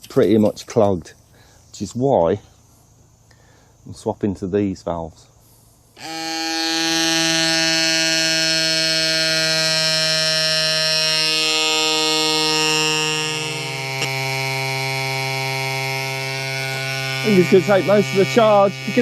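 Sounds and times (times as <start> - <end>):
tyre inflator motor whine: 6.0 - 19.0.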